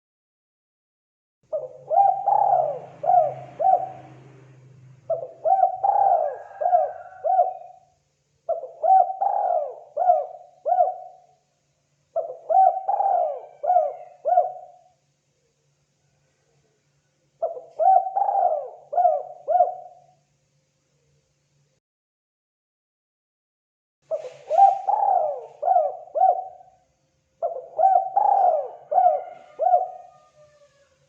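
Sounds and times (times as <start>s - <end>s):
dove cooing: 1.5s - 7.9s, 8.5s - 11.4s, 12.2s - 15.0s, 17.4s - 20.2s, 24.1s - 26.8s, 27.4s - 30.9s.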